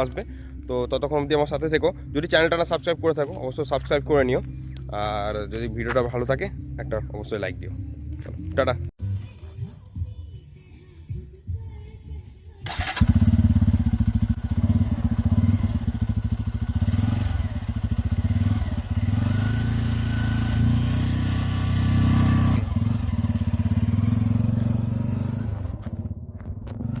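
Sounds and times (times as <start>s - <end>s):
motorcycle engine running: 12.6s - 27.0s.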